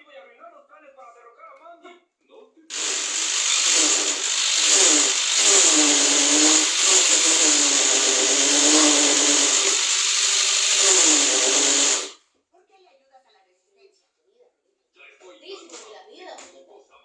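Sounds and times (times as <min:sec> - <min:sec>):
electric drill whining: 0:02.7 - 0:12.2.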